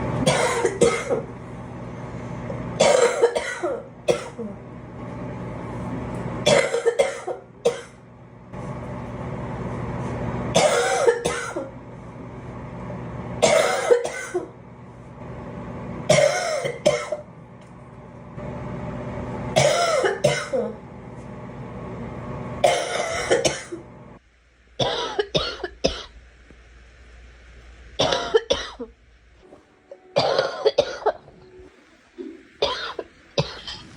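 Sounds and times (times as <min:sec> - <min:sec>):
girl coughing: 0:00.2 - 0:01.3, 0:02.8 - 0:04.6, 0:06.5 - 0:08.0, 0:10.6 - 0:11.7, 0:13.4 - 0:14.5, 0:16.1 - 0:17.2, 0:19.6 - 0:20.8, 0:22.6 - 0:23.8, 0:24.8 - 0:26.1, 0:28.0 - 0:28.9, 0:30.2 - 0:31.2, 0:32.6 - 0:33.9.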